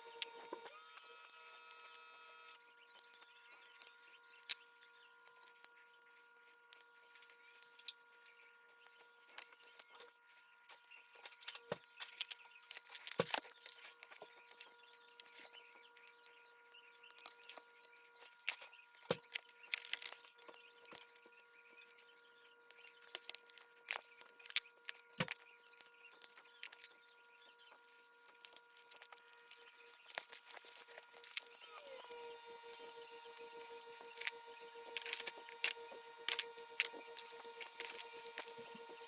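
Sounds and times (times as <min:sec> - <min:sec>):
faint steady hum: 0:00.0 - 0:39.0.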